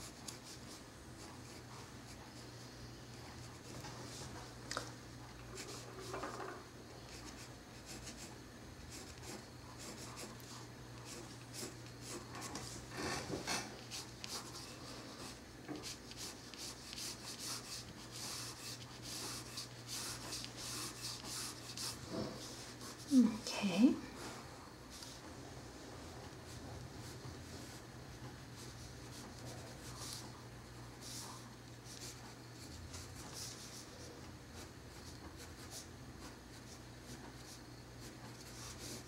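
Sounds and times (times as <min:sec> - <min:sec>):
pencil scratching on paper: 0:00.0 - 0:02.5, 0:07.1 - 0:23.2, 0:28.6 - 0:39.0.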